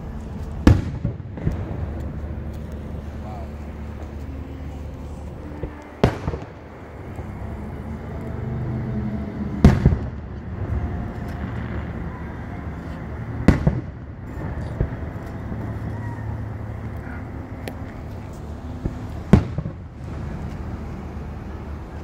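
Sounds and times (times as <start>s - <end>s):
fireworks crackle: 0.0s - 8.4s, 9.6s - 22.0s
low steady hum: 0.0s - 22.0s
fireworks bangs: 0.6s - 4.2s, 4.9s - 8.2s, 9.4s - 17.0s, 18.8s - 20.8s.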